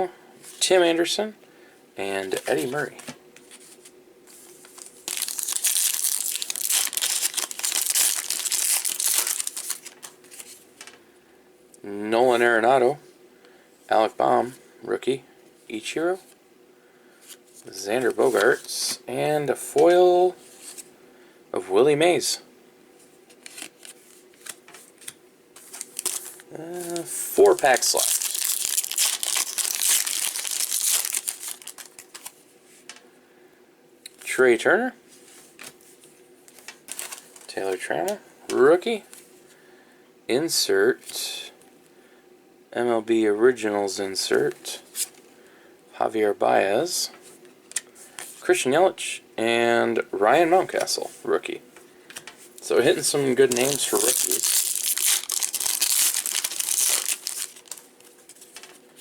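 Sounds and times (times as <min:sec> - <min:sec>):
plastic wrapper crinkling: 0:02.3 - 0:03.0, 0:04.5 - 0:10.6, 0:25.6 - 0:32.4, 0:36.5 - 0:37.5, 0:53.0 - 0:58.8.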